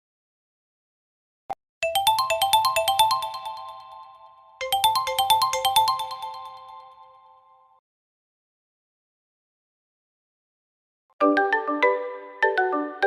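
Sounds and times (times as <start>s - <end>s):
plucked ringtone melody: 1.8s - 7.4s.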